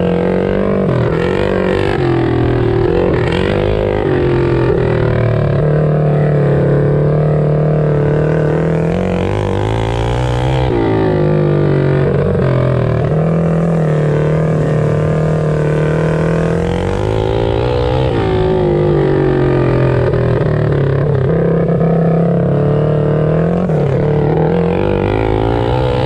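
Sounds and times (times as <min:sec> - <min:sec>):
mini bike engines racing: 0:00.0 - 0:26.0.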